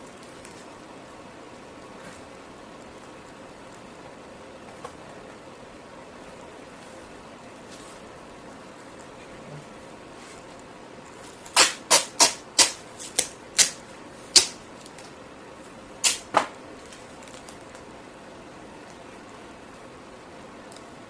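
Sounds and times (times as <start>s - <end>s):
tape ripping off roll: 11.2s - 15.2s, 16.0s - 17.8s.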